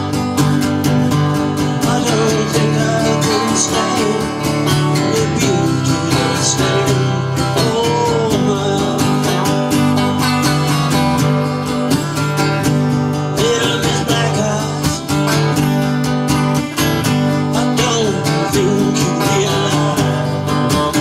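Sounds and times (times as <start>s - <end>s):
strummed acoustic guitar: 0.0s - 21.0s
person singing: 1.6s - 10.6s, 13.3s - 15.4s, 16.6s - 21.0s.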